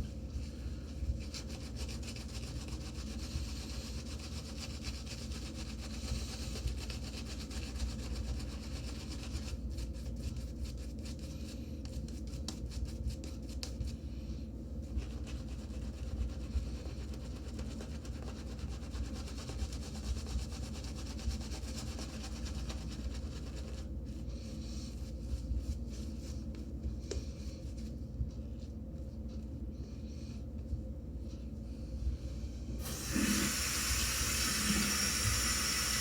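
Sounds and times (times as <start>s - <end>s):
shaving brush rubbing lather: 1.0s - 13.6s, 14.9s - 26.3s, 32.8s - 36.0s.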